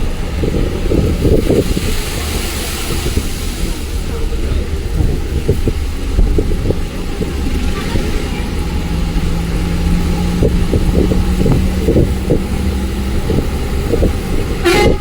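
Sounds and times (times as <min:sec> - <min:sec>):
bus rumbling: 0:00.0 - 0:15.0
hiss: 0:00.6 - 0:05.9.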